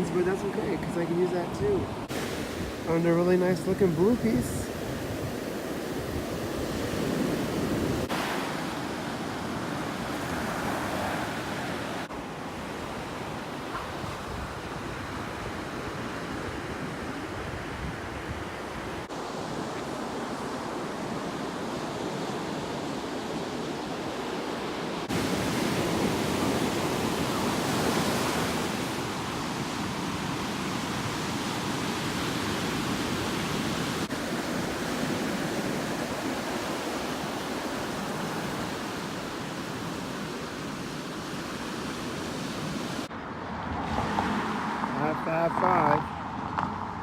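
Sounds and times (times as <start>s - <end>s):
ocean surf washing onto beach: 0.0s - 43.1s, 43.8s - 46.1s
wind on microphone: 3.7s - 12.0s, 13.3s - 24.1s.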